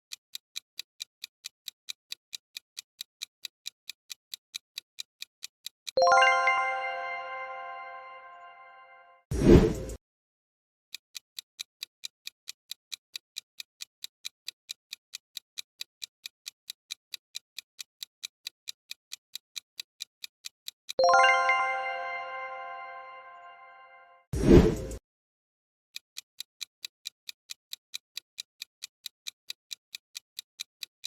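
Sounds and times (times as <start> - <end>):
rapid clock ticks: 0.0 - 6.6, 10.9 - 23.0, 26.0 - 31.0
bright bell chime: 6.0 - 9.2, 21.0 - 24.2.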